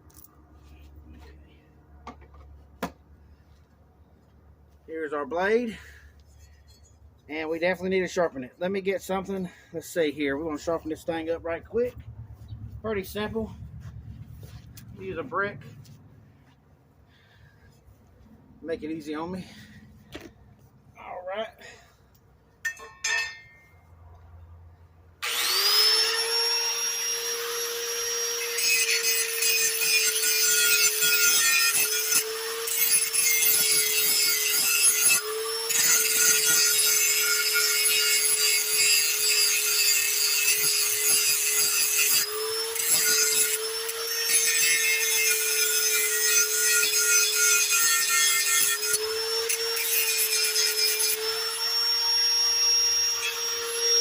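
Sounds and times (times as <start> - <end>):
power grinder grinding metal: 5.2 - 12.0, 12.8 - 16.0, 25.2 - 54.0.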